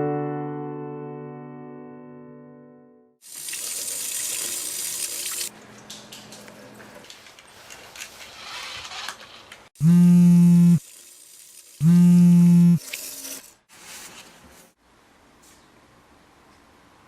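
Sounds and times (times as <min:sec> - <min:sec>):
tap water running into sink: 0:03.2 - 0:07.1.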